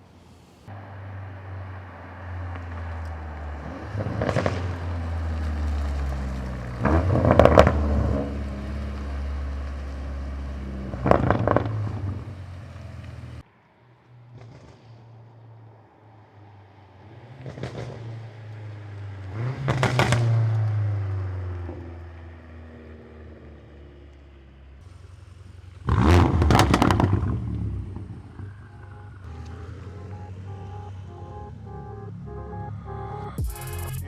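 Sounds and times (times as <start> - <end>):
car engine revving: 0.7 - 13.4, 19.2 - 23.4, 24.8 - 34.0
exhaust crackles and pops: 1.7 - 13.4, 14.0 - 15.4, 17.2 - 22.9, 24.0 - 34.0.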